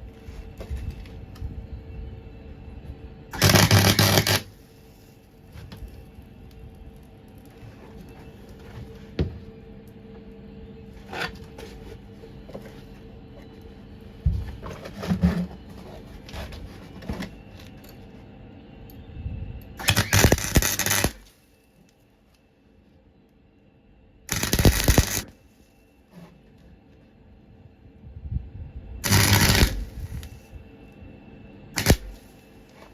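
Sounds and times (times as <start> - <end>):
steady hum: 0.0 - 32.9
welding arc crackling: 3.4 - 4.5, 19.8 - 21.3, 24.3 - 25.3, 29.0 - 30.3, 31.8 - 32.2.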